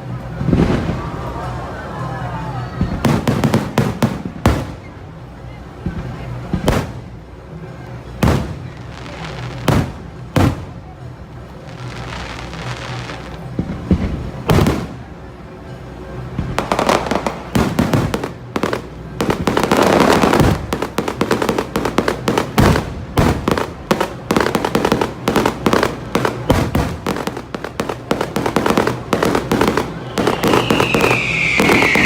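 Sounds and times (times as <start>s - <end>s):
rapid firework cracks and bangs: 0.3s - 1.5s, 2.8s - 5.0s, 5.8s - 7.3s, 8.1s - 15.1s, 16.3s - 32.0s
firework shell bursts: 24.0s - 32.0s.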